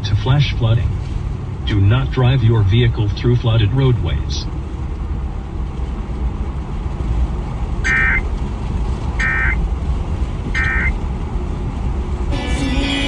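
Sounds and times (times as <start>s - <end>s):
steady low rumble: 0.0s - 13.0s
digital data tone bursts: 7.9s - 8.2s, 9.2s - 9.6s, 10.6s - 10.9s.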